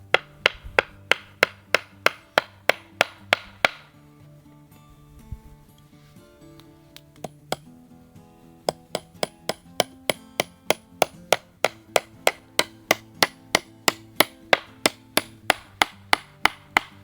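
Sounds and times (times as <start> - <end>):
hammer driving nail into wood: 0.0 - 3.9, 7.1 - 7.7, 8.7 - 17.0.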